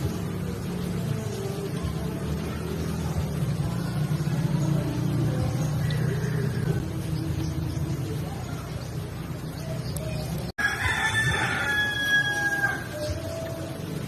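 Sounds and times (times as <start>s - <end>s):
rooster crowing: 5.8s - 6.8s, 10.6s - 13.2s.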